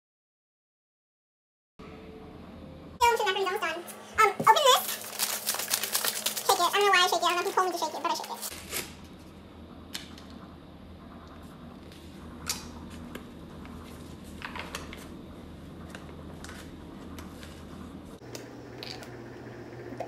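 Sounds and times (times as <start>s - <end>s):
kitchen appliance humming: 18.2s - 20.0s.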